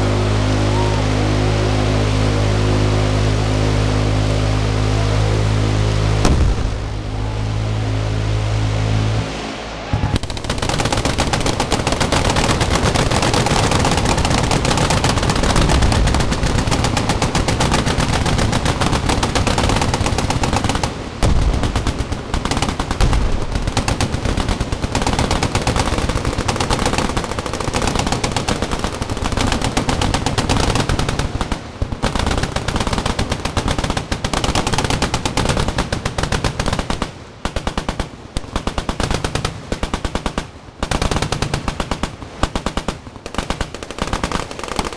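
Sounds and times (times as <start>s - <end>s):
machine guns firing: 10.0s - 44.9s.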